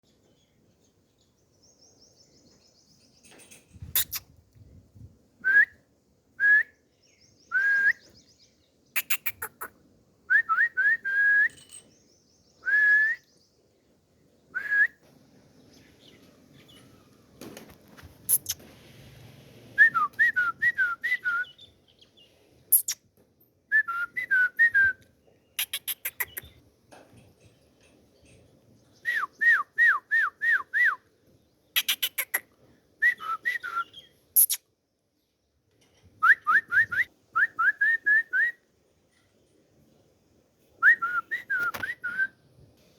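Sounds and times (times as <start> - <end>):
bird chirps: 0.1 - 4.3, 6.7 - 9.8, 18.3 - 18.6, 21.4 - 23.0, 25.2 - 26.6, 31.7 - 32.4, 33.2 - 34.7.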